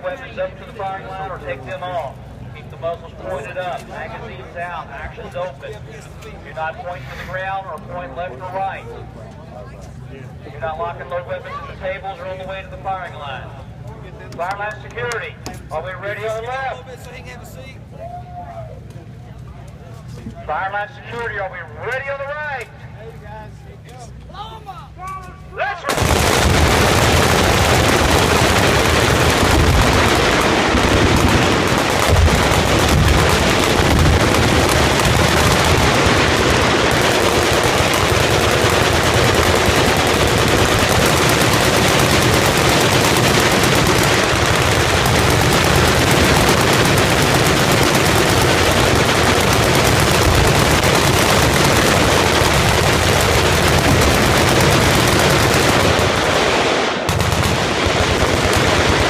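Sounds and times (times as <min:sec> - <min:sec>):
massed automatic gunfire: 0:25.9 - 0:59.0.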